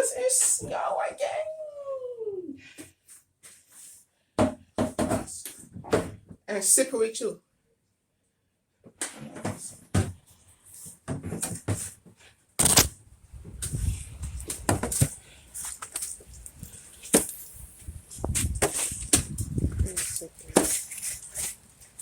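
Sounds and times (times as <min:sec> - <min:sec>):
microphone handling bumps: 0:17.8 - 0:20.1.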